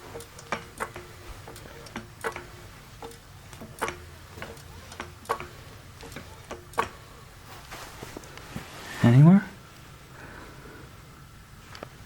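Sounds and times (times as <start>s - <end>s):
metal parts clicking and tapping: 0.0s - 7.0s.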